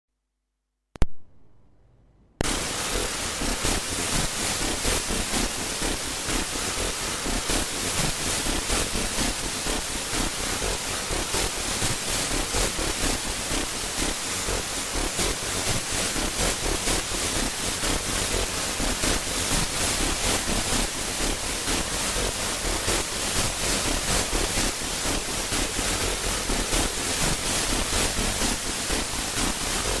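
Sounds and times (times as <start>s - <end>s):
hissing static: 2.4s - 11.6s.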